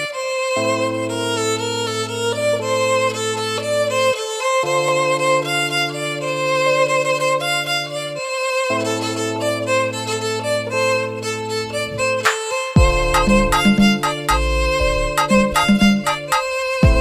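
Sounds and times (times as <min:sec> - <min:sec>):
violin-like string melody: 0:00.0 - 0:17.0
sustained bass: 0:12.8 - 0:16.0.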